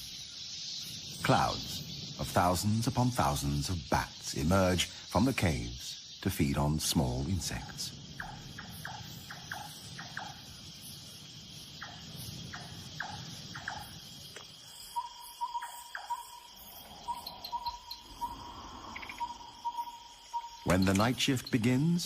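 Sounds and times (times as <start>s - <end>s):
high insect drone: 0.0s - 22.0s.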